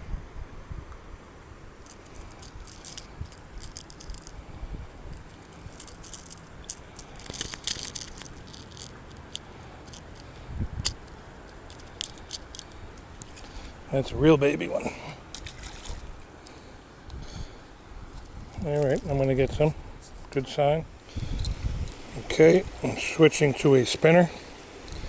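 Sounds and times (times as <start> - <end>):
light metallic clicks and rattles: 1.8 - 4.4, 5.1 - 13.7, 21.3 - 22.7.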